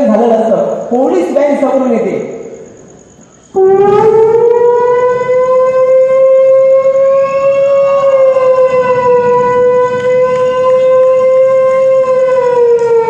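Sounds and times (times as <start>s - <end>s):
person imitating a siren: 3.5s - 13.0s.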